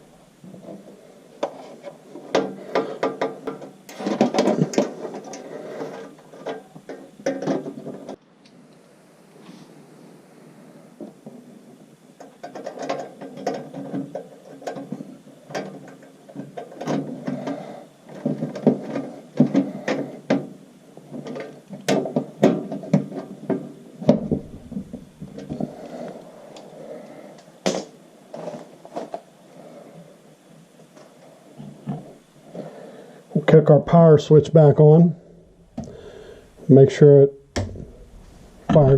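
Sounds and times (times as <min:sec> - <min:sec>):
hand tools and metal parts clattering: 0:00.4 - 0:08.2, 0:12.2 - 0:20.5.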